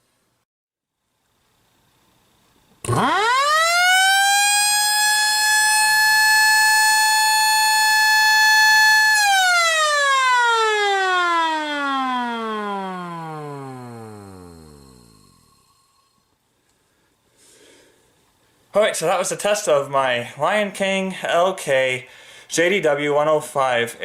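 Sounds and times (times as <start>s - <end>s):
air raid siren wailing: 2.9s - 15.6s.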